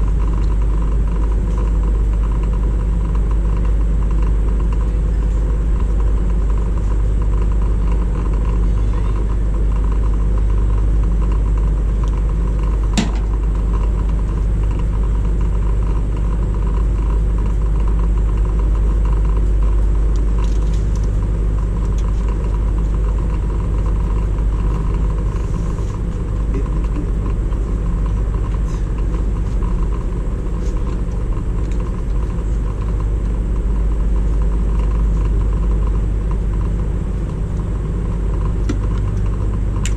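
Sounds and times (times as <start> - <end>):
low engine rumble: 0.0 - 39.9.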